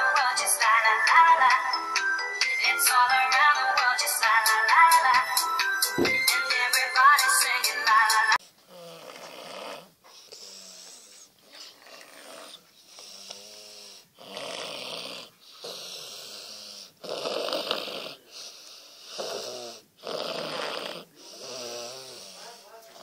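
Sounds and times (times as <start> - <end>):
person snoring: 8.7 - 22.8.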